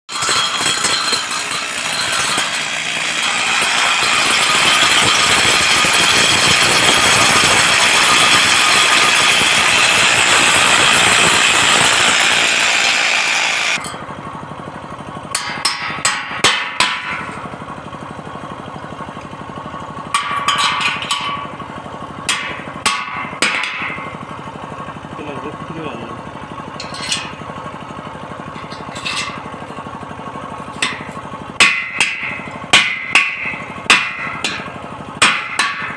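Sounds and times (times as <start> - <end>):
welding arc sizzling: 0.2 - 13.8
machine hum: 0.2 - 15.4.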